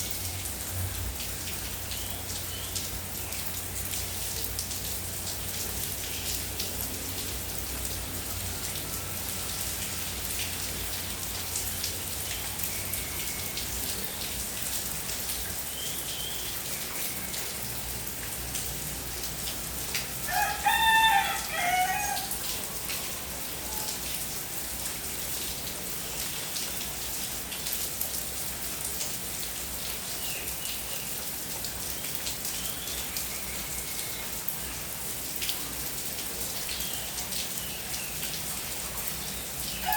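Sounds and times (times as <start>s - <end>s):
steady rain falling: 0.0s - 39.9s
rooster crowing: 20.3s - 22.4s.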